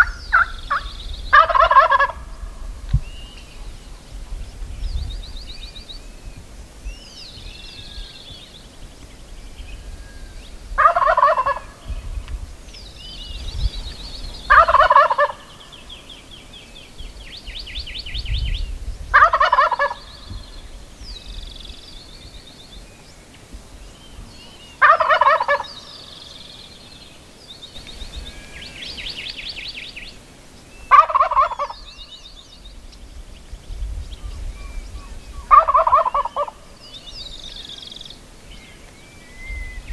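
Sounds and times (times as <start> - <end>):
turkey gobbling: 0.0 - 2.2, 10.8 - 11.8, 14.5 - 15.4, 19.1 - 20.0, 24.8 - 25.7, 30.9 - 31.8, 35.5 - 36.6
songbirds chirping: 0.0 - 39.9.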